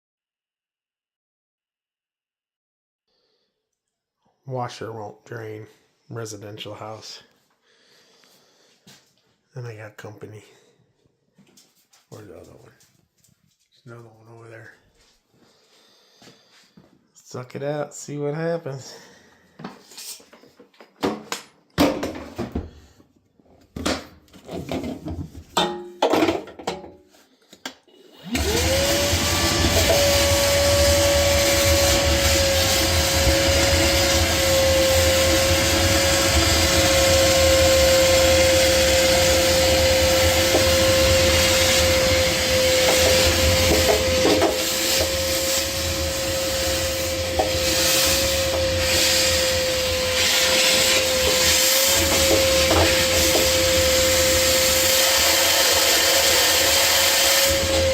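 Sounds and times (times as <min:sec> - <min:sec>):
wet dry vacuum whining: 0:27.9 - 0:57.9.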